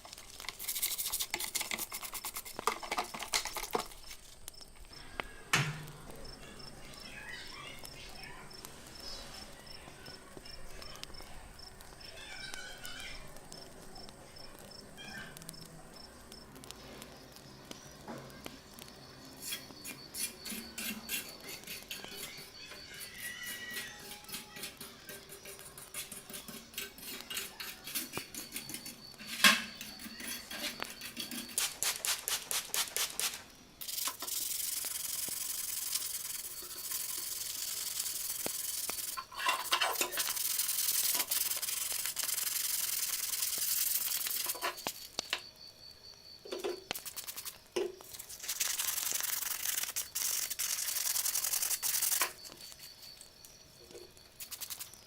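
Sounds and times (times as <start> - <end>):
sanding strokes: 0.6 - 2.7.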